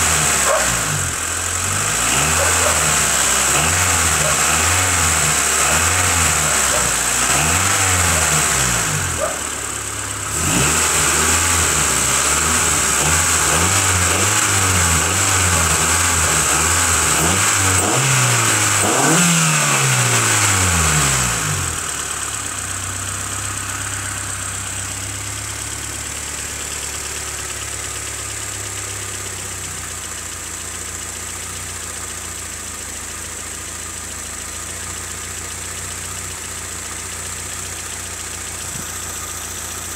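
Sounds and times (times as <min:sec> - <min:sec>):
car engine revving: 0:00.0 - 0:29.3.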